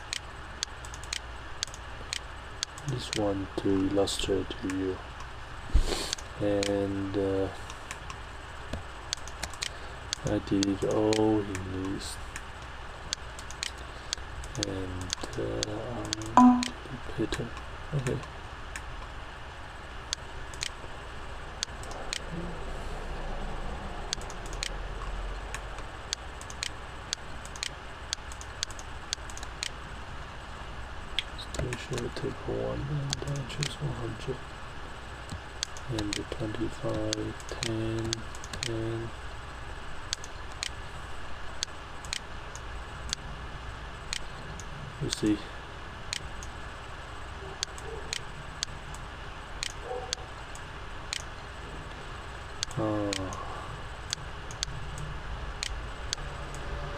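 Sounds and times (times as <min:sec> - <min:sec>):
computer mouse clicking: 0:00.0 - 0:03.2, 0:07.9 - 0:12.5, 0:13.1 - 0:16.7, 0:20.1 - 0:20.8, 0:24.1 - 0:29.8, 0:35.3 - 0:36.3, 0:36.9 - 0:38.8, 0:52.6 - 0:53.4
steady background noise: 0:00.0 - 0:56.9
steady low hum: 0:00.0 - 0:56.9.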